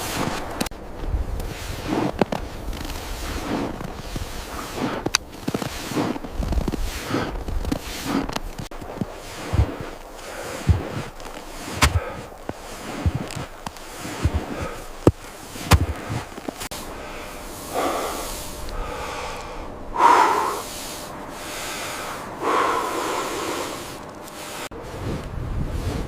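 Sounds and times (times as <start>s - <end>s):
heavy breathy snorts: 9.4s - 13.4s, 17.1s - 24.7s.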